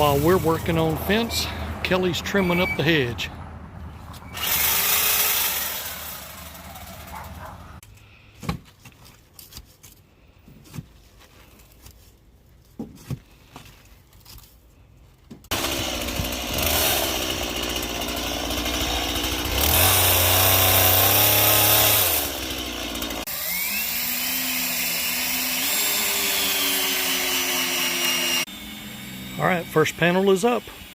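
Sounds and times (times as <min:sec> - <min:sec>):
power tool running: 0:00.0 - 0:03.0, 0:04.2 - 0:07.8, 0:15.5 - 0:30.9.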